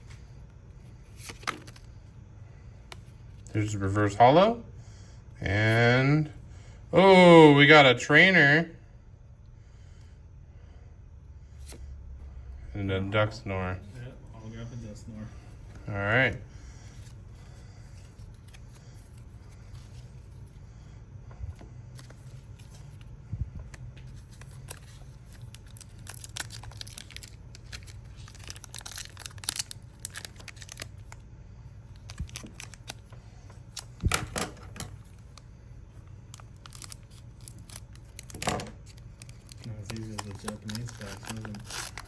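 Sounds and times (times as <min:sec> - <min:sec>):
low steady hum: 0:00.0 - 0:42.0
foil wrapper tearing and crinkling: 0:24.2 - 0:31.2, 0:31.9 - 0:33.0, 0:36.2 - 0:42.0.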